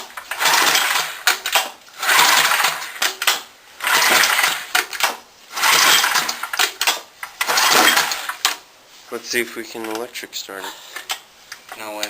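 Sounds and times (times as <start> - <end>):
go-kart engine cranking: 0.0 - 8.6.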